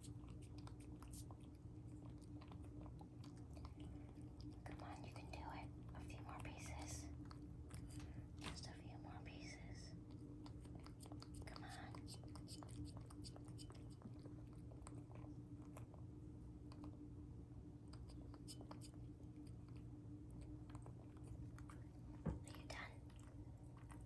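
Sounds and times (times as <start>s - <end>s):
cat chewing food: 0.0s - 24.0s
steady low hum: 0.0s - 24.0s.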